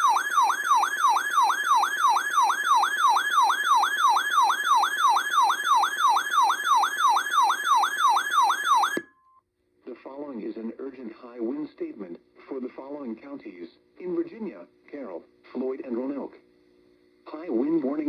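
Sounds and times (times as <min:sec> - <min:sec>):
electronic alert siren warbling: 0:00.0 - 0:09.1.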